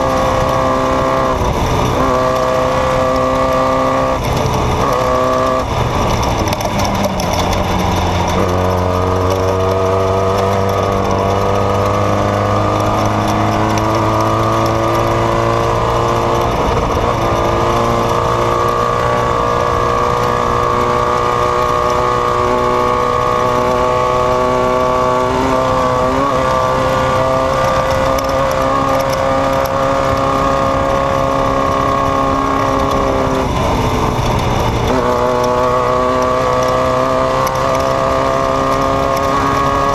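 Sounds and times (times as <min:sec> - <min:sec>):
off-road vehicle engine revving: 0:00.0 - 0:39.9.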